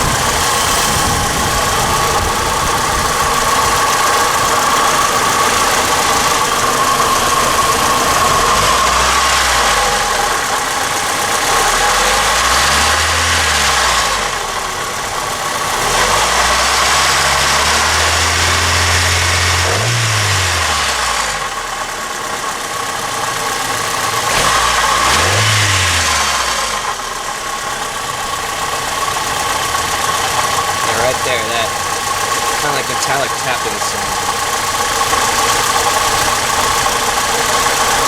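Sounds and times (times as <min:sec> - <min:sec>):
car engine running: 0:00.0 - 0:38.0.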